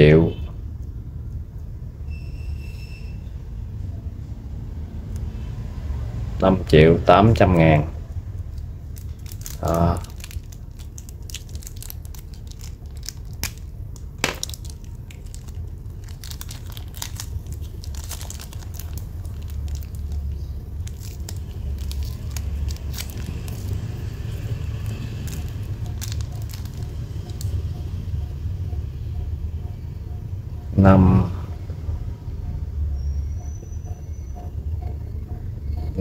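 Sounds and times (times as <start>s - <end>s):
steady low hum: 0.0s - 36.0s
crinkling and small clicks: 8.1s - 27.6s.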